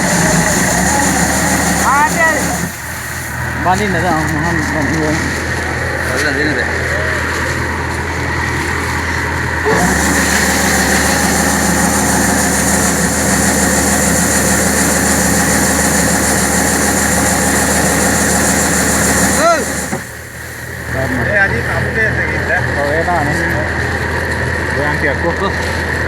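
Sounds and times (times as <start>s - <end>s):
high hiss: 0.0s - 4.4s, 9.6s - 22.0s
combine harvester engine drone: 0.0s - 26.0s.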